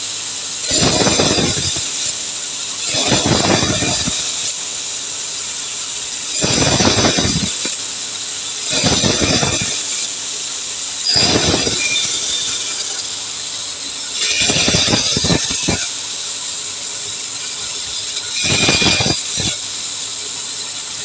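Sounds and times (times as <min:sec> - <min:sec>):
woodworking machine hissing: 0:00.0 - 0:21.0
bursts of cutting noise: 0:00.6 - 0:20.6.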